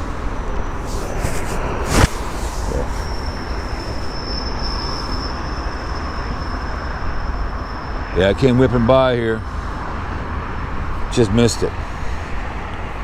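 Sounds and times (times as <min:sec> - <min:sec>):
train rumbling past: 0:00.0 - 0:10.6
high-pitched wheel squeal: 0:00.5 - 0:08.8.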